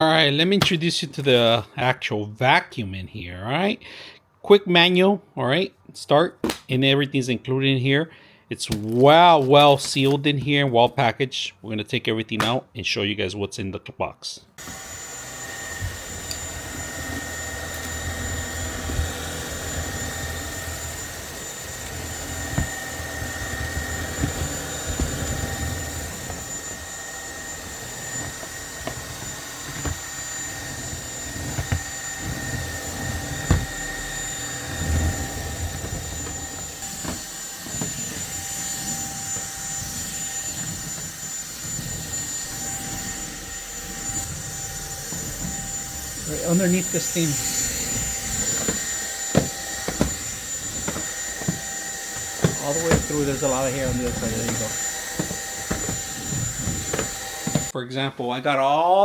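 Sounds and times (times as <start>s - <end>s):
vacuum cleaner motor whine: 14.6s - 57.8s.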